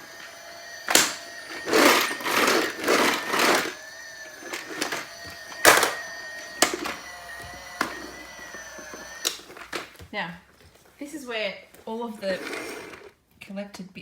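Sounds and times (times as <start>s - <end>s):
toy vacuum cleaner whine: 0.0s - 10.1s, 12.2s - 13.1s
rushing and rattling on floor: 0.0s - 11.0s.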